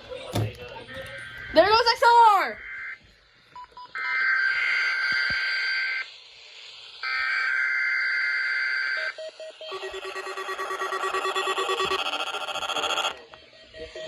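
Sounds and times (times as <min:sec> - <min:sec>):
harsh buzzing data bursts: 0:09.6 - 0:14.0.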